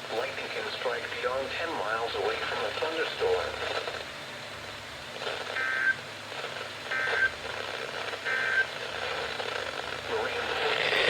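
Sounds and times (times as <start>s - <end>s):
faint radio hiss: 0.0s - 11.0s.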